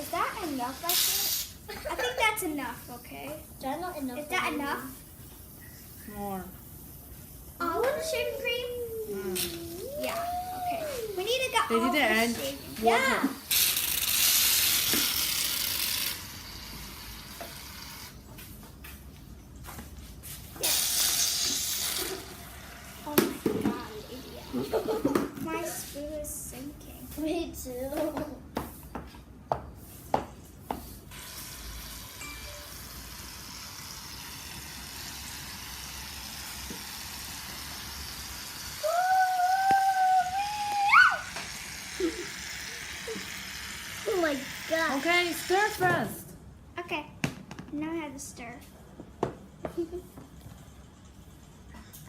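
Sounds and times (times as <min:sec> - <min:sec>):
child singing high ooh: 0:07.9 - 0:11.2, 0:38.8 - 0:41.3
water running from a tap: 0:33.1 - 0:39.4.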